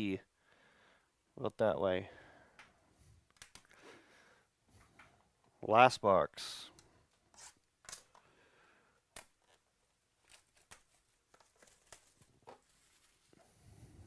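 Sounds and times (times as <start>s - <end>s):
packaging rustling: 10.2s - 13.4s.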